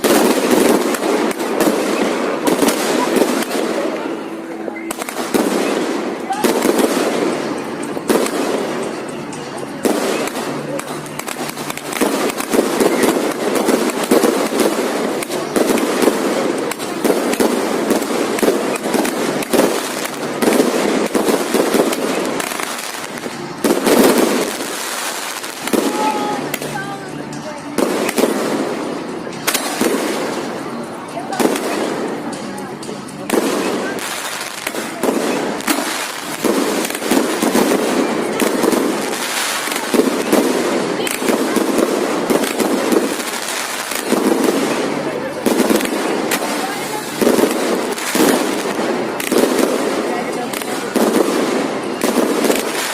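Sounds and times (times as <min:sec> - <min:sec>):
fireworks banging and crackling: 0:00.0 - 0:52.9.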